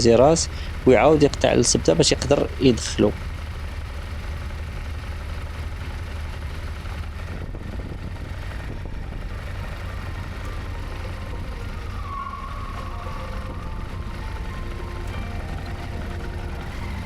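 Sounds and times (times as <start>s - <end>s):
low engine rumble: 0.0s - 17.0s
brief high steady tone: 9.0s - 17.0s.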